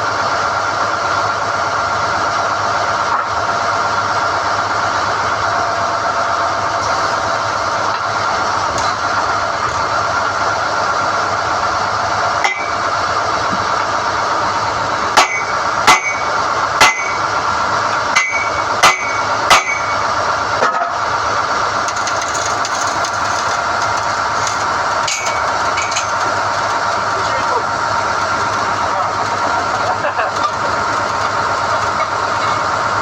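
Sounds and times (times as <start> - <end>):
drilling rig running: 0.0 - 33.0
sharp metallic clanks: 15.2 - 17.2, 18.2 - 20.0, 21.9 - 26.4.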